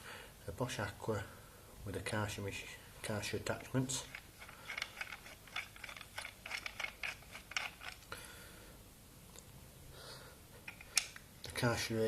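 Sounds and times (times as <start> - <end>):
small clicks and rattles of fittings: 3.5 - 8.2, 10.6 - 11.3.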